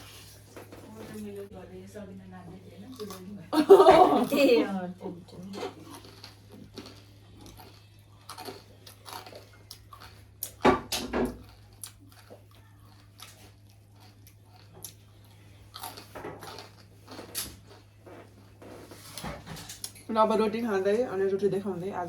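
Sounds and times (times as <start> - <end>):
person chewing crunchy food: 5.7 - 19.2.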